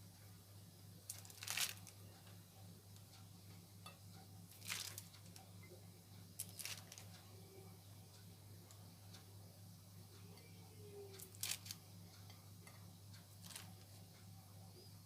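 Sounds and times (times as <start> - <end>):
steady low hum: 0.0 - 15.0
rustling scraping handling sounds: 1.1 - 1.9, 4.5 - 5.1, 6.4 - 7.1.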